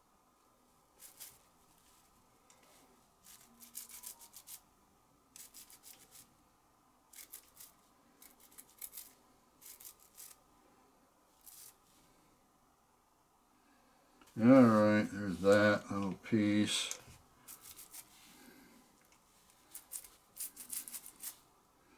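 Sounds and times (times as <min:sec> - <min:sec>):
rapid scrubbing of small part: 0:01.0 - 0:04.6, 0:05.4 - 0:06.3, 0:07.1 - 0:10.4, 0:11.4 - 0:11.9, 0:17.4 - 0:18.4, 0:19.3 - 0:21.5.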